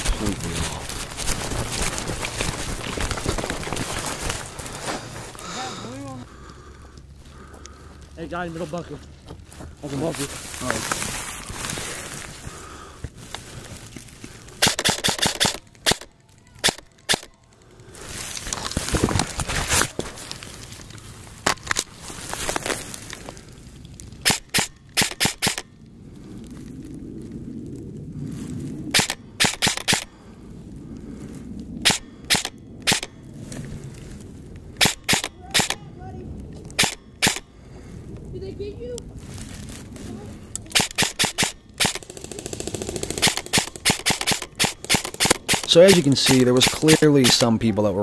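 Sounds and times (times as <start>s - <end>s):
airsoft gun shots: 14.6s - 17.3s, 24.2s - 25.6s, 28.9s - 30.1s, 31.8s - 33.1s, 34.8s - 35.8s, 36.8s - 37.4s, 40.7s - 47.5s.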